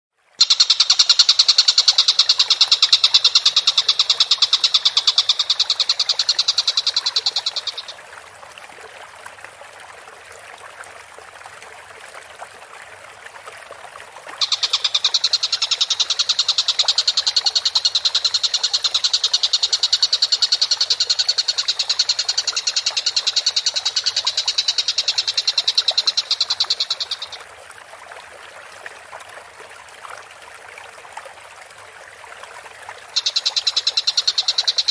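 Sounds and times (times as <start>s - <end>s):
kingfisher high-pitched trill: 0.4s - 7.8s, 14.4s - 27.3s.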